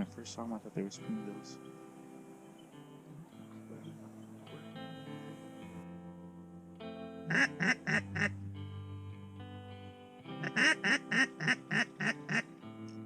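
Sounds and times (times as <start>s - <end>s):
guitar music: 0.0s - 13.0s
duck quacking: 7.3s - 8.4s, 10.4s - 12.5s.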